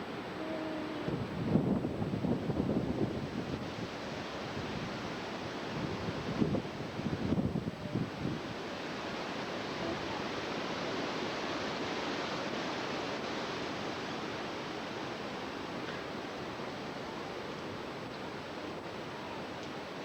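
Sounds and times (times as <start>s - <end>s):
storm wind through trees: 0.0s - 20.0s.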